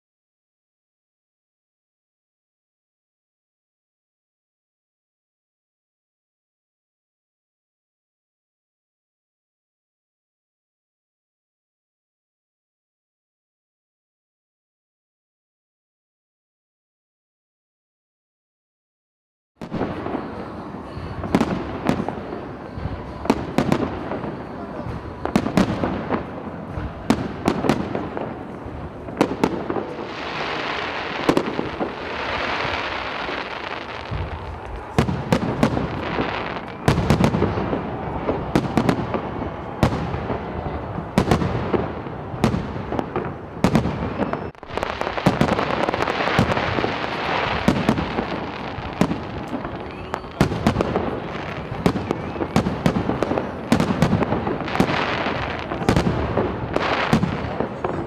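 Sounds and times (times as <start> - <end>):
fireworks bangs: 19.6 - 58.0
fireworks crackling and sizzling: 19.6 - 58.0.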